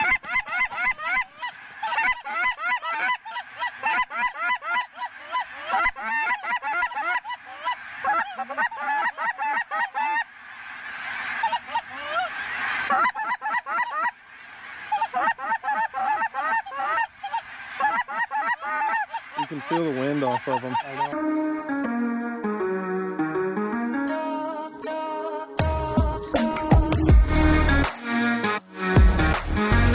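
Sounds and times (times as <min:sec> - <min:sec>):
geese cackling and honking: 0:00.0 - 0:21.9.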